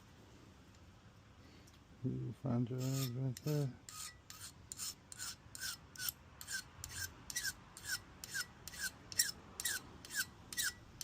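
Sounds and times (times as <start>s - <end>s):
knife rasping on sharpener: 2.8s - 10.8s.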